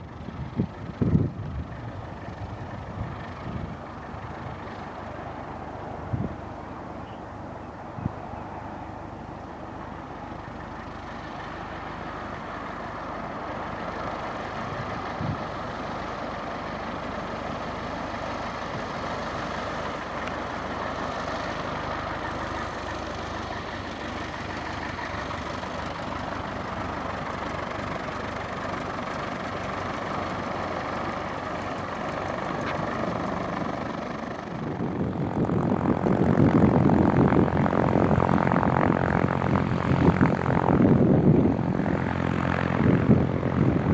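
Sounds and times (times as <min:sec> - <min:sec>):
propeller aircraft engine drone: 0:00.0 - 0:43.9.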